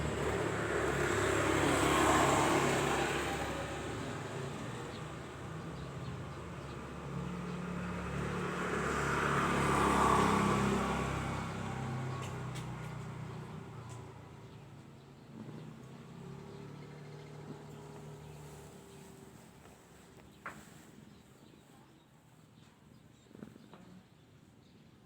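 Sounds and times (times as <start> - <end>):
vehicle passing: 0.0 - 6.1, 6.9 - 13.8.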